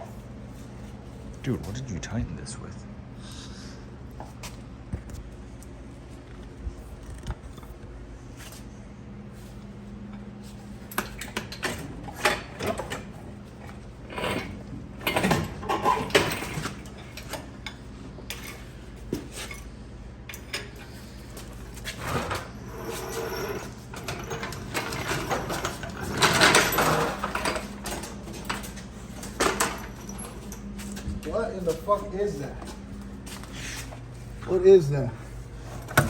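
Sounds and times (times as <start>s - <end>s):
steady low hum: 0.0s - 36.0s
metal tools clanking: 21.9s - 32.7s.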